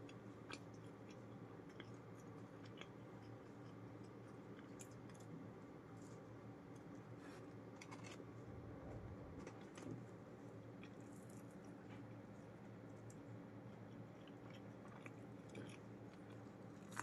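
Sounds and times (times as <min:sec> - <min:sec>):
chewing and mouth noises: 0:00.1 - 0:05.3, 0:13.0 - 0:17.0
low hum: 0:08.2 - 0:10.4.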